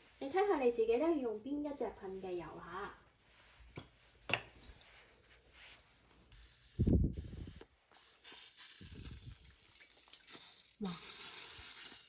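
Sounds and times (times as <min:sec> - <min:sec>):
oil spray hissing: 0:10.3 - 0:12.0.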